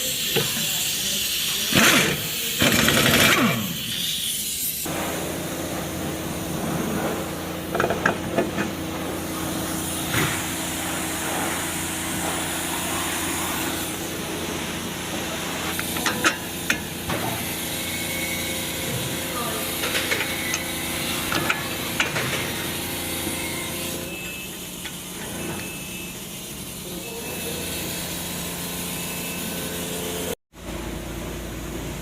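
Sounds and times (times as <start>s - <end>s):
hiss: 0.0s - 5.4s.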